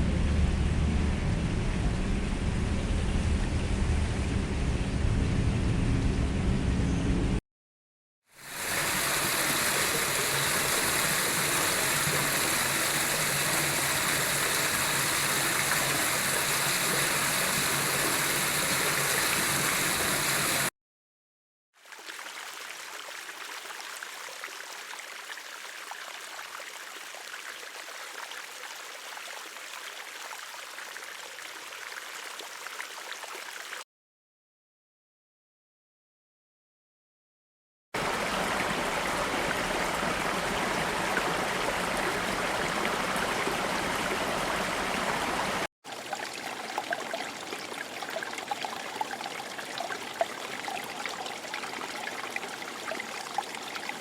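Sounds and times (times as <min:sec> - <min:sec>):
loud rushing water: 0:08.4 - 0:20.7, 0:38.0 - 0:53.1
thin hiss of running water: 0:08.4 - 0:20.7.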